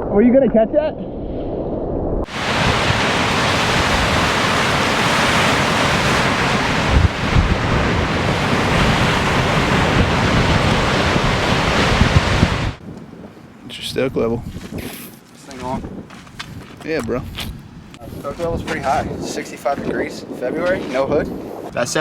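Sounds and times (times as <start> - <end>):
ocean surf breaking: 2.2 - 12.9
wind buffeting microphone: 2.2 - 22.0.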